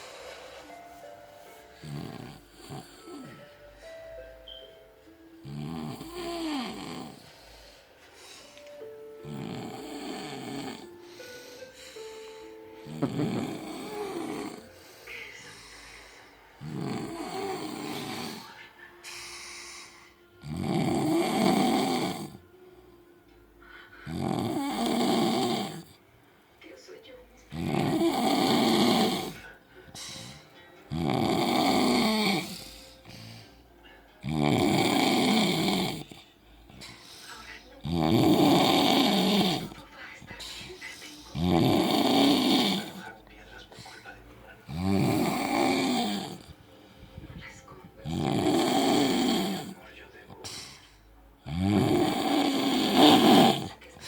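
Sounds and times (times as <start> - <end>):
man snoring: 1.8 - 3.4, 5.4 - 7.4, 9.2 - 11.3, 12.8 - 14.8, 16.6 - 19.4, 20.4 - 22.5, 24.0 - 26.0, 27.5 - 33.6, 34.2 - 37.0, 37.8 - 39.8, 41.3 - 43.2, 44.6 - 46.6, 48.0 - 50.5, 51.4 - 53.8.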